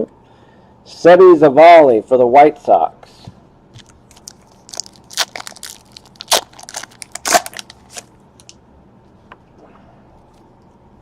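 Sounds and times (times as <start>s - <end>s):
plastic packaging crinkling: 3.8s - 8.6s.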